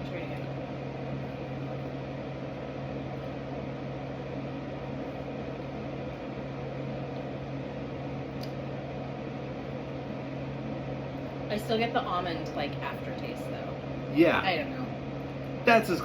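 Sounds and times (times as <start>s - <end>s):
low room hum with hiss: 0.0s - 16.0s.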